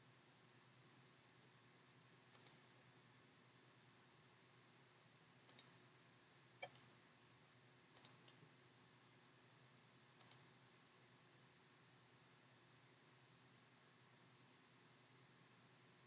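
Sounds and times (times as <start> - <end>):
computer mouse button clicks: 2.4 - 2.6, 5.5 - 5.7, 6.6 - 6.8.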